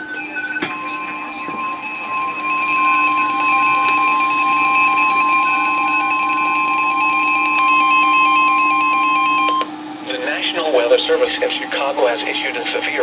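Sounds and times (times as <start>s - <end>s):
electronic alert beeps: 0.0s - 9.7s
high steady alarm tone: 0.0s - 10.0s.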